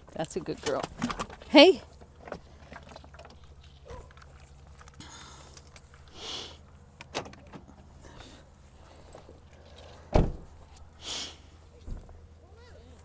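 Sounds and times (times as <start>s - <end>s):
car door shutting: 10.1s - 10.6s.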